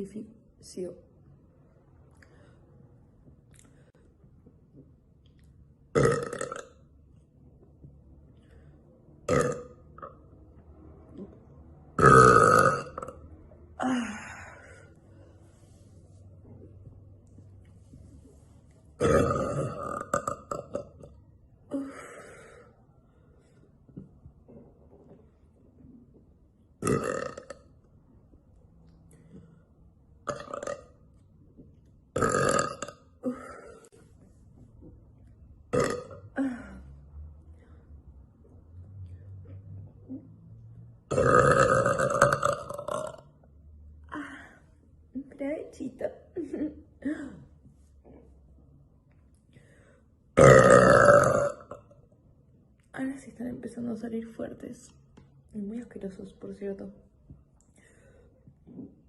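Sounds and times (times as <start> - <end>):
woman belching: 5.9 - 6.8, 9.3 - 10.1, 12.0 - 13.2, 19.0 - 22.0, 26.8 - 27.6, 30.2 - 30.9, 32.2 - 33.8, 35.7 - 36.8, 41.1 - 43.2, 50.4 - 51.9
woman burping: 5.9 - 6.8, 9.3 - 10.1, 12.0 - 13.2, 19.0 - 22.6, 26.8 - 27.6, 30.2 - 30.9, 32.2 - 34.0, 35.7 - 36.8, 41.1 - 43.2, 50.4 - 52.0.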